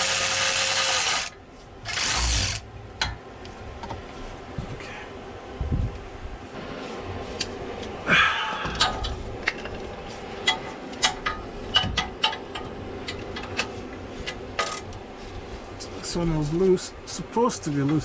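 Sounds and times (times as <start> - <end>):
ratchet clicking metallically: 0.0 - 2.6.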